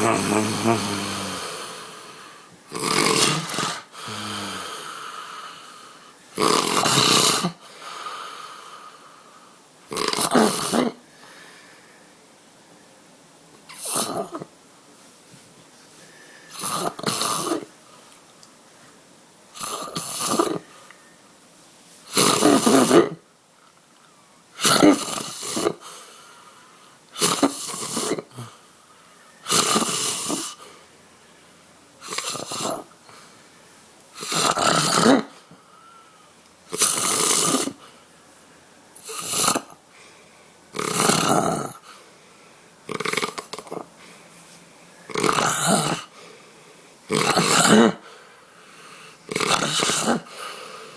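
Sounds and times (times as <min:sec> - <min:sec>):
person snoring: 0:00.0 - 0:09.1, 0:19.6 - 0:20.7, 0:24.6 - 0:26.0, 0:32.0 - 0:33.0, 0:34.2 - 0:35.5, 0:36.7 - 0:37.8, 0:40.7 - 0:41.9, 0:42.9 - 0:44.0, 0:45.1 - 0:46.2, 0:47.1 - 0:48.1, 0:49.0 - 0:50.9.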